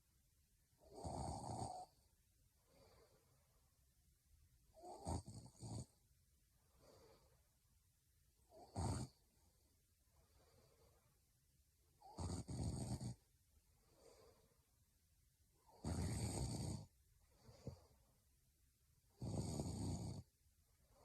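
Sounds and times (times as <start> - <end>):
woman snoring: 0.8 - 2.0, 4.8 - 5.9, 8.5 - 9.2, 12.0 - 13.2, 15.7 - 17.9, 19.1 - 20.3
soft breaths: 0.8 - 4.0, 5.8 - 7.8, 8.4 - 12.2, 13.1 - 14.9, 15.5 - 18.4, 19.1 - 21.0.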